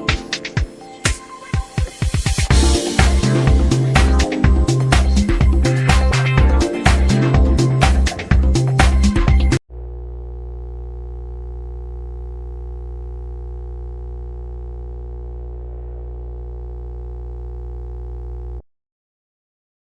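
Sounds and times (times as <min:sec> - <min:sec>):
music track: 0:00.0 - 0:09.6.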